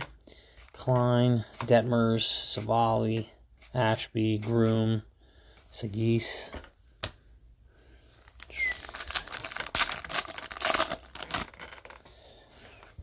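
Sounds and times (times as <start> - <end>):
foil wrapper tearing and crinkling: 8.3 - 12.0.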